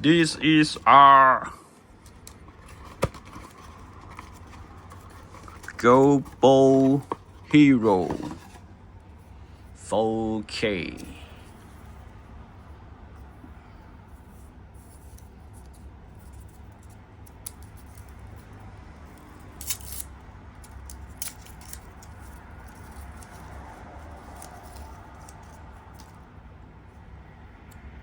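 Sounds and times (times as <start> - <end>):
low steady hum: 0.0 - 28.0
packaging crinkling: 2.0 - 7.5.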